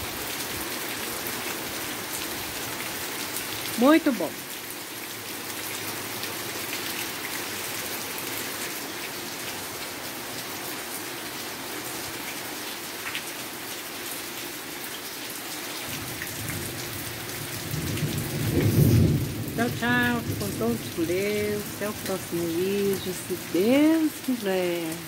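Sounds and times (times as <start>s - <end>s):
rain pattering: 0.0s - 25.0s
low rumble of thunder: 16.0s - 21.8s.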